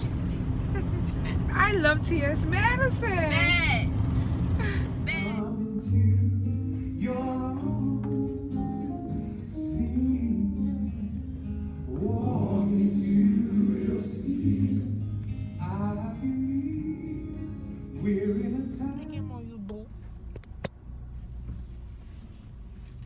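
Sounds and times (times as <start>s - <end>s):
acoustic guitar: 0.0s - 20.2s
bass: 0.0s - 23.0s
person singing gospel: 4.6s - 8.4s, 11.9s - 15.0s, 18.0s - 19.4s.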